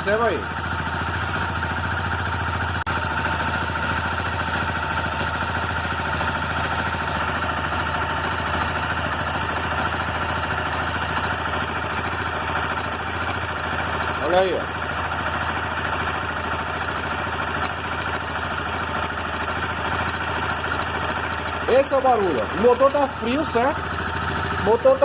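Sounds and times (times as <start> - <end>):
motorcycle engine idling: 0.0 - 25.0.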